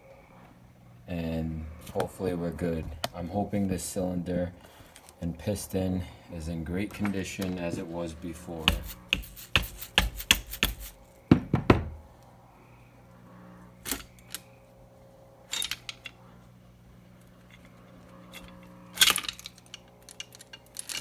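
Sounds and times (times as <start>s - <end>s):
faint steady hum: 0.0s - 21.0s
tools and engine parts clacking: 15.5s - 16.2s, 17.5s - 21.0s.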